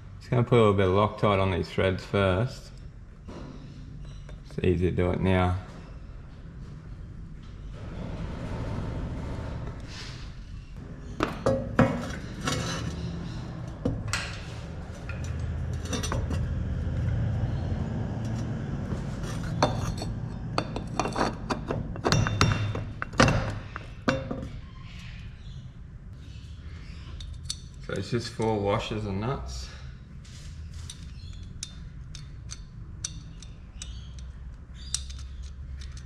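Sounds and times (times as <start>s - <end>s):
metal parts clinking and knocking: 13.8s - 16.7s, 19.3s - 24.5s, 27.2s - 28.6s, 30.8s - 36.0s.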